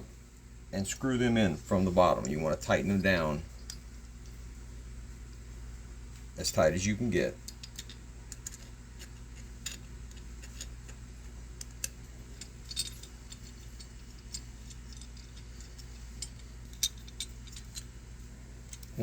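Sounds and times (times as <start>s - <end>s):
steady low hum: 0.0s - 19.0s
metallic clicks of screws tightened: 7.4s - 11.0s, 11.6s - 17.9s.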